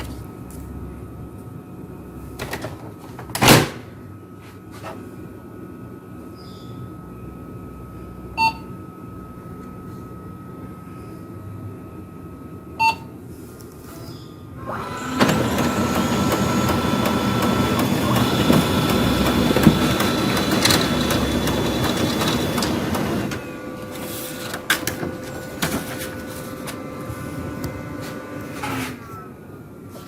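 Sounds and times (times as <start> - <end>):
printer mechanism whirring: 14.6 - 29.0
printer sharp clicks: 14.7 - 23.5.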